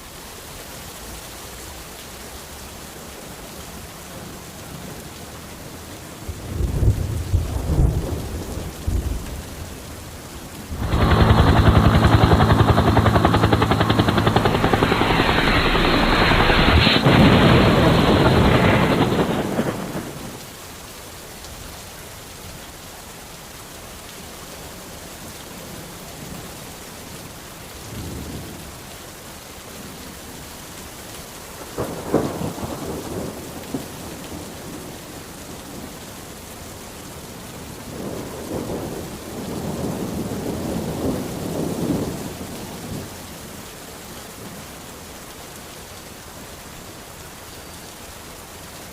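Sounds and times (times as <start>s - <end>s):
steady rain: 0.0s - 48.9s
thunder rolling: 10.7s - 20.4s.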